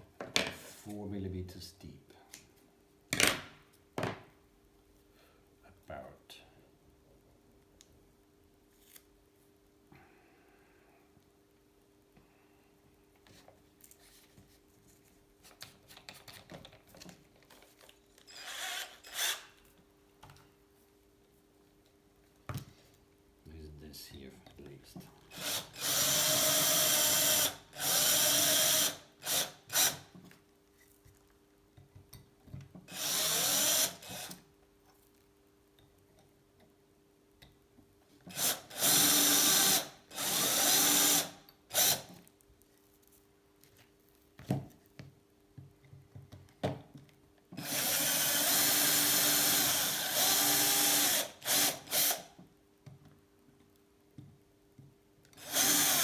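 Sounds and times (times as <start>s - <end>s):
electric drill running: 18.3s - 19.5s, 25.3s - 30.0s, 32.9s - 34.4s, 38.3s - 42.1s, 47.6s - 52.3s, 55.4s - 56.0s.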